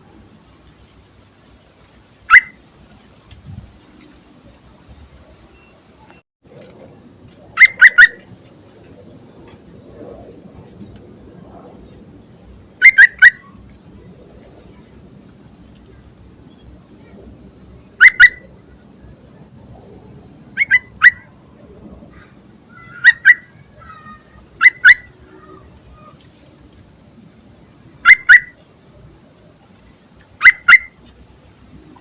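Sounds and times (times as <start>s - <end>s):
bird chirping calls: 7.6s - 8.4s, 12.8s - 13.7s, 16.4s - 19.3s, 20.3s - 26.4s, 27.7s - 28.7s, 30.0s - 31.1s.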